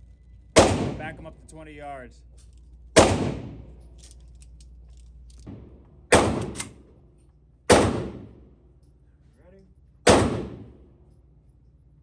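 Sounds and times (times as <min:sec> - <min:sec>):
gunshots: 0:00.6 - 0:01.2, 0:03.0 - 0:03.6, 0:05.5 - 0:06.8, 0:07.7 - 0:08.4, 0:10.0 - 0:10.8.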